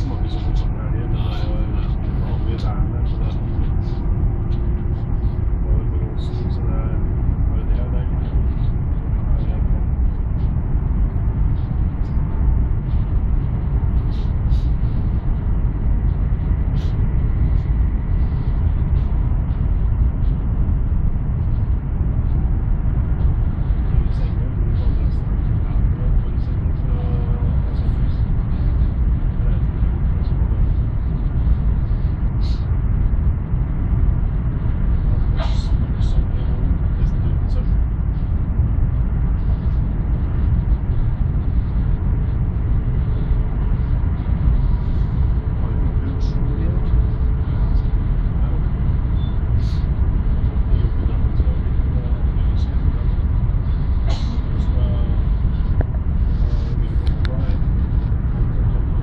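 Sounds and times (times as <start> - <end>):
faint whine: 0.0 - 59.0
train rumbling: 0.0 - 59.0.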